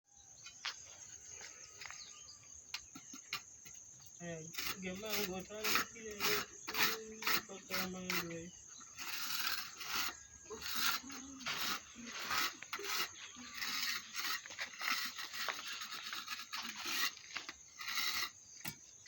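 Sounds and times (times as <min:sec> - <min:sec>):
rough scraping on hard surface: 0:04.5 - 0:19.0.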